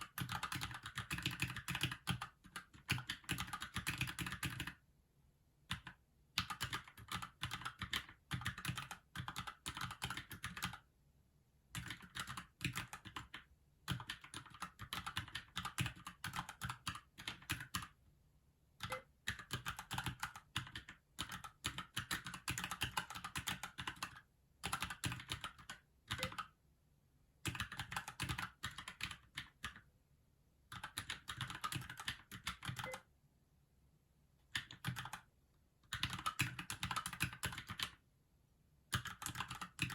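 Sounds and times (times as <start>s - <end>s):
mechanical keyboard typing: 0.0s - 4.8s, 5.7s - 10.9s, 11.7s - 18.0s, 18.8s - 26.5s, 27.4s - 29.9s, 30.7s - 33.1s, 34.5s - 38.0s, 38.9s - 39.9s.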